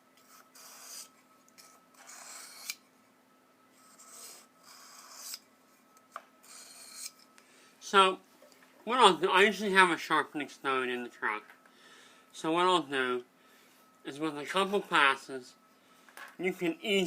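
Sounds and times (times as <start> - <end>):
utility knife blade scraping: 0.2 - 2.8, 3.8 - 5.4, 6.4 - 7.2.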